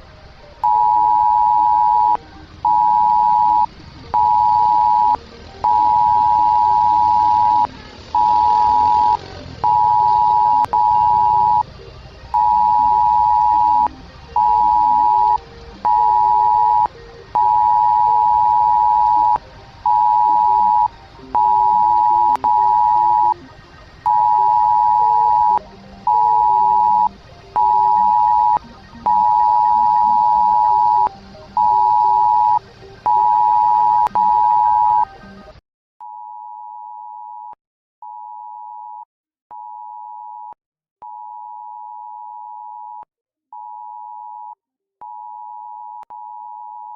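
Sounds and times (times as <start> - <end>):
two-tone alert beep: 0.6 - 11.7, 12.3 - 23.4, 24.0 - 35.1.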